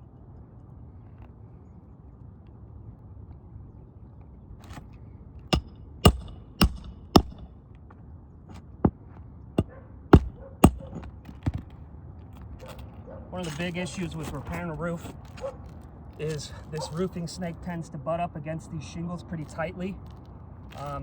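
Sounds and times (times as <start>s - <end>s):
hammer striking roofing nails: 5.5s - 7.5s, 9.6s - 11.6s.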